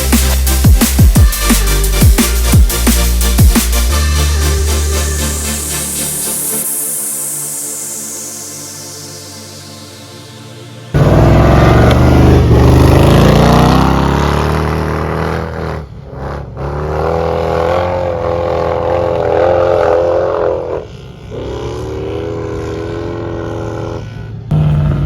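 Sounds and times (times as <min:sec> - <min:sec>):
engine revving hard: 0:11.0 - 0:25.0.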